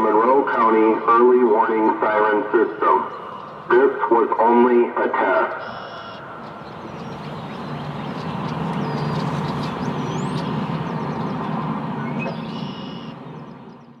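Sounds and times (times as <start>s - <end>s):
motor vehicle passing: 6.0s - 14.0s.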